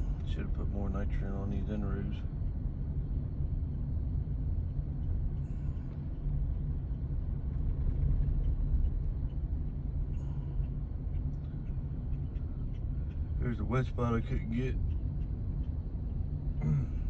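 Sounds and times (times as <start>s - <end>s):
vehicle engine and tyres rumbling: 0.0s - 17.0s.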